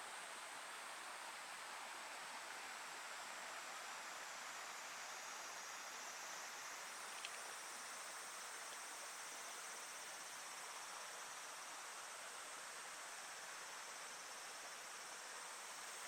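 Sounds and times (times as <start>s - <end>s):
steady hiss: 0.0s - 16.0s
faint click: 7.1s - 7.4s.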